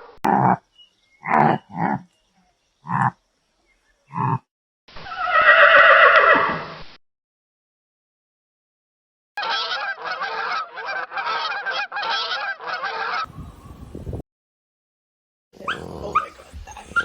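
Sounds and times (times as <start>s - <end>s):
fowl honking: 9.4s - 13.3s
dog whimpering: 15.6s - 17.0s.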